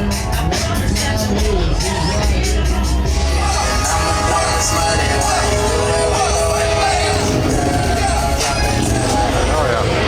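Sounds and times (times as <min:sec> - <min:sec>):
music with heavy bass: 0:00.0 - 0:10.0.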